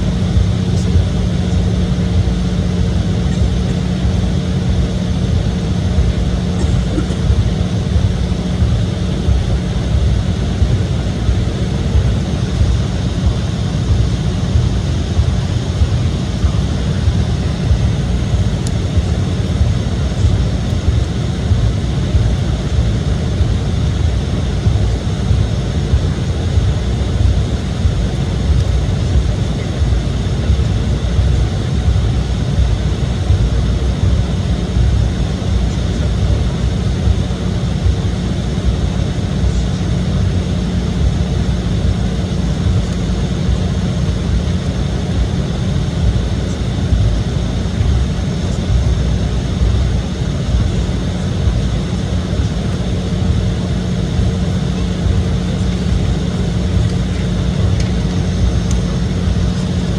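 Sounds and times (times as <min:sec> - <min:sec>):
jet engine drone in cabin: 0:00.0 - 0:59.9.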